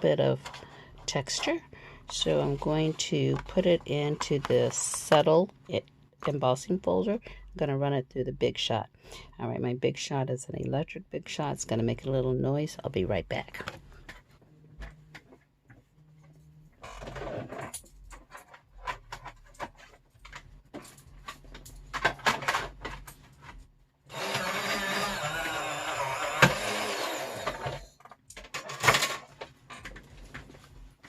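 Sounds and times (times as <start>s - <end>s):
die-cutting machine motor running: 24.1s - 27.8s.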